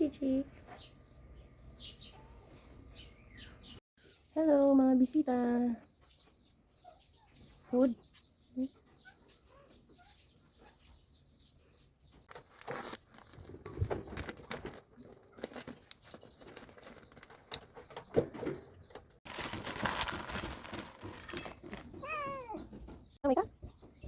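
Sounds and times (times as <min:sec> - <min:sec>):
dry cat food rattling into bowl: 0:12.4 - 0:17.9, 0:19.3 - 0:22.3
cat meowing: 0:21.9 - 0:22.7.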